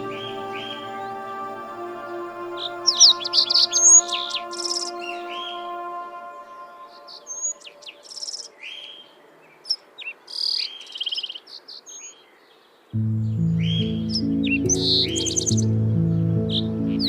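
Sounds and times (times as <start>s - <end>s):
background music with low notes: 0.0s - 7.3s, 13.0s - 17.0s
small birds chirping and trilling: 6.6s - 17.0s.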